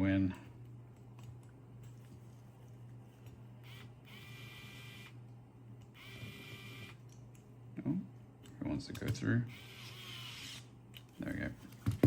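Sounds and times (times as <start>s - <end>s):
steady low hum: 0.0s - 12.0s
electric screwdriver whirring: 6.0s - 7.0s, 9.5s - 10.7s.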